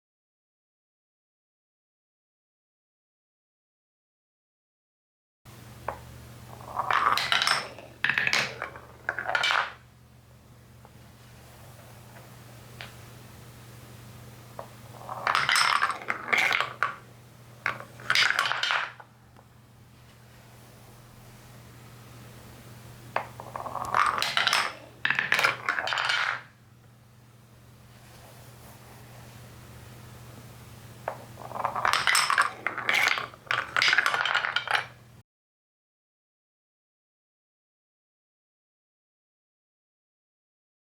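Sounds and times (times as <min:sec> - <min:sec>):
balls rattling through marble run: 0:05.8 - 0:09.8, 0:14.6 - 0:19.1, 0:23.1 - 0:26.6, 0:31.0 - 0:35.1.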